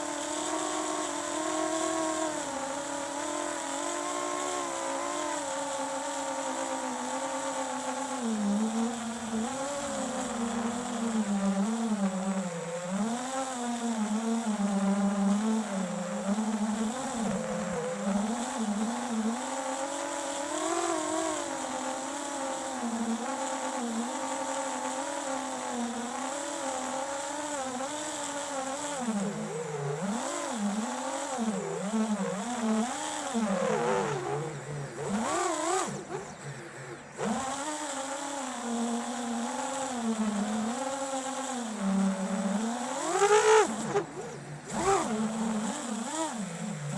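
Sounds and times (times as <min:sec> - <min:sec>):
drone motors whining: 0:00.0 - 0:46.9.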